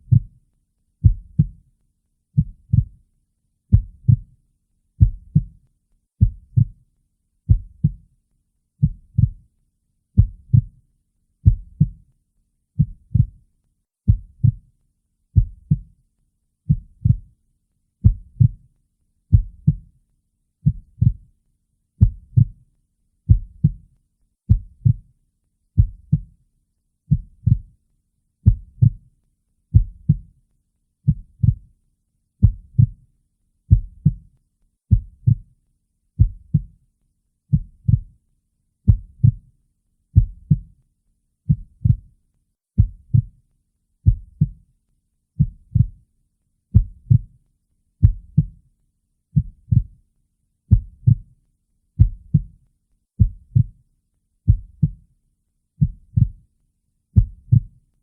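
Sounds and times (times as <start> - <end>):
heartbeat thuds: 3.7 - 4.2, 6.2 - 6.7, 12.8 - 13.4, 14.1 - 14.6, 15.4 - 15.9, 18.0 - 18.6, 20.6 - 21.2, 27.1 - 27.7, 28.4 - 29.0, 29.7 - 30.2, 31.1 - 31.6, 32.4 - 33.0, 33.7 - 34.2, 34.9 - 35.4, 36.2 - 36.7, 38.9 - 39.4, 40.2 - 40.7, 42.8 - 43.3, 44.0 - 44.6, 45.4 - 46.0, 46.8 - 47.3, 50.7 - 51.2, 52.0 - 52.5, 53.2 - 53.7, 54.5 - 55.0, 57.2 - 57.6.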